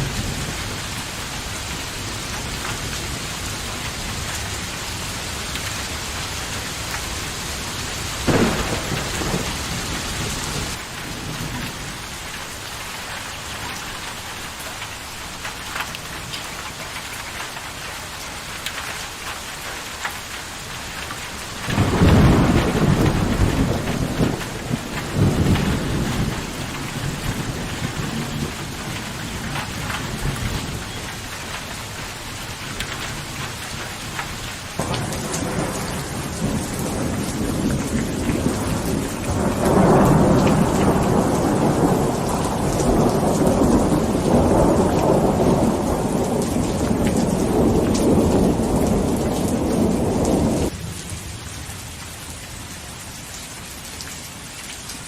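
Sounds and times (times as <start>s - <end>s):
steady rain: 0.0s - 55.0s
rolling thunder: 8.2s - 12.0s, 21.6s - 30.9s, 34.8s - 50.8s.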